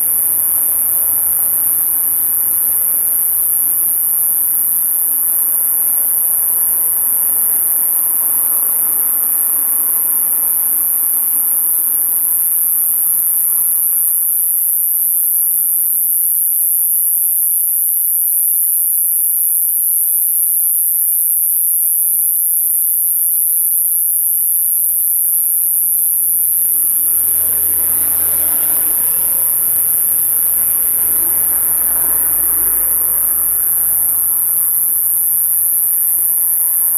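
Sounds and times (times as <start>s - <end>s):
katydid high-pitched buzzing call: 0.0s - 36.9s
faint low rumble: 26.4s - 36.9s.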